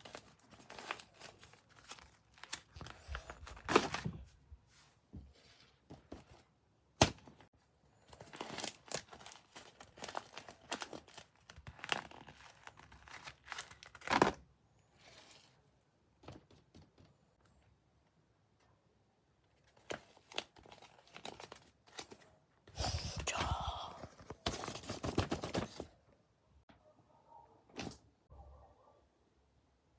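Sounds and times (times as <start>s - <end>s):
wrapping tearing and crumpling: 0.0s - 4.0s, 8.0s - 14.4s, 19.7s - 23.3s.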